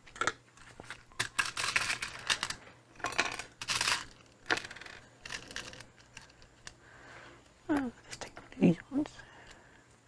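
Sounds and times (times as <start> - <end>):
small screws rattling: 0.2 - 6.8.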